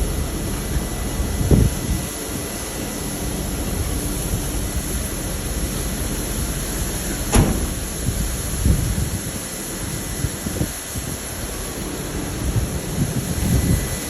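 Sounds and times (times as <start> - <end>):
combine harvester running: 0.0 - 14.0
low thump: 7.3 - 8.2.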